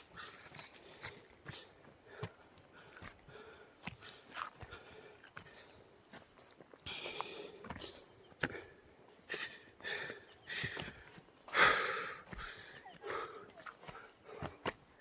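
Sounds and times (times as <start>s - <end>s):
person panting hard: 0.0s - 5.9s, 6.8s - 14.8s
footsteps on rock: 0.0s - 8.7s.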